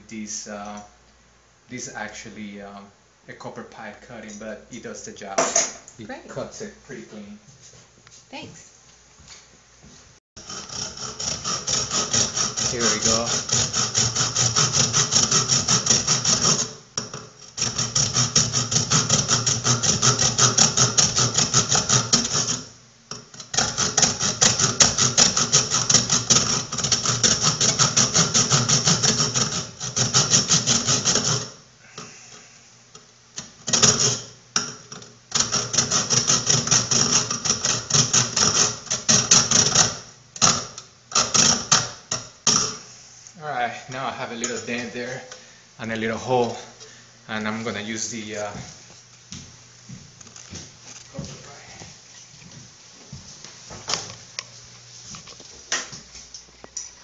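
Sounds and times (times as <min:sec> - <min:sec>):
hand saw cutting plastic pipe: 0:10.4 - 0:22.7, 0:23.4 - 0:31.6, 0:33.7 - 0:34.2, 0:35.3 - 0:42.8.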